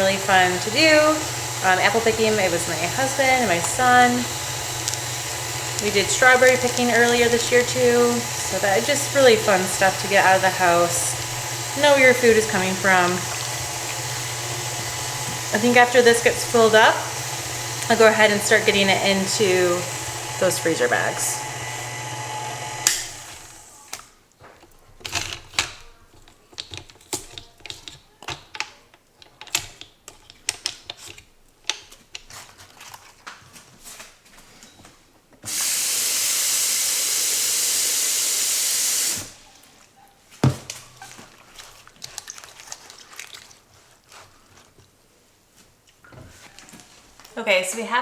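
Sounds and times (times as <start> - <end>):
kitchen tap running: 0.0 - 24.0, 35.5 - 39.4.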